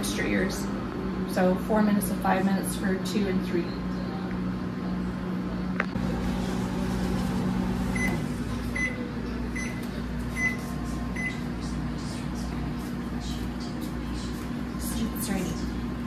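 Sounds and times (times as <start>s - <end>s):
microwave oven humming: 0.0s - 16.0s
microwave beeps: 7.2s - 11.6s.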